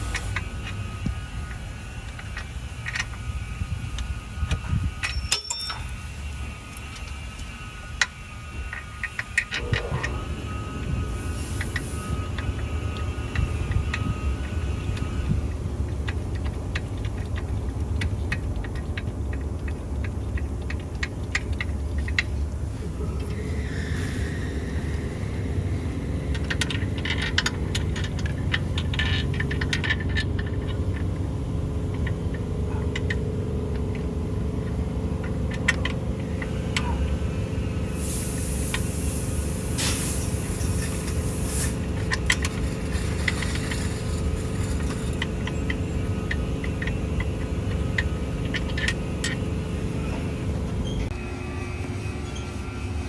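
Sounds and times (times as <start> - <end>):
hiss: 0.0 - 0.5, 23.4 - 26.1, 37.9 - 42.0
low shop rumble: 0.0 - 53.0
tools and bolts clicking: 1.5 - 3.3, 3.9 - 6.0, 8.7 - 10.2, 12.4 - 23.4, 26.0 - 37.0, 40.4 - 51.1.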